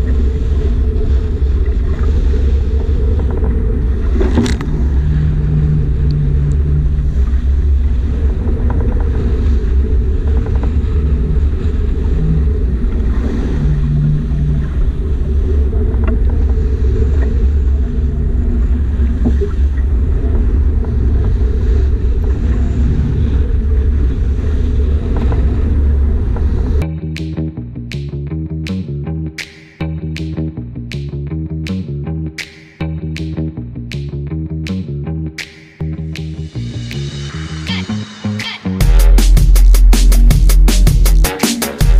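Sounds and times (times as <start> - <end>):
water against hull: 0.0 - 26.8
wind rumble on microphone: 0.0 - 26.9.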